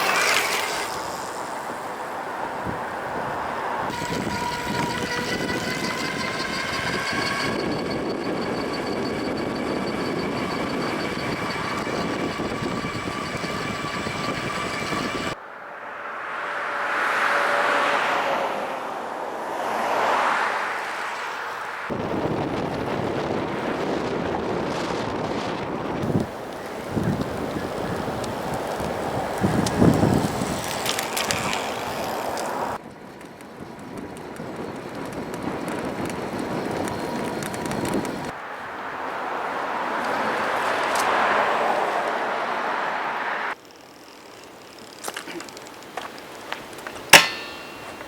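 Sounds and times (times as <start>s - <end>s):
electric bike motor whine: 0.0s - 15.4s, 26.0s - 42.3s, 43.5s - 48.0s
vehicles passing: 0.0s - 48.0s
wind and road noise: 0.0s - 48.0s.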